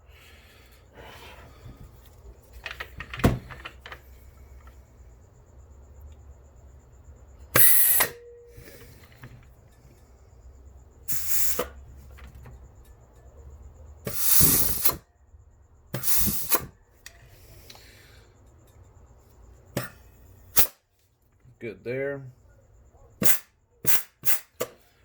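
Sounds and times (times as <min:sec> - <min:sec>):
compressed air blasts: 0:07.5 - 0:09.0, 0:11.1 - 0:11.8, 0:14.0 - 0:15.0, 0:15.9 - 0:16.7, 0:19.8 - 0:20.8, 0:23.2 - 0:24.8.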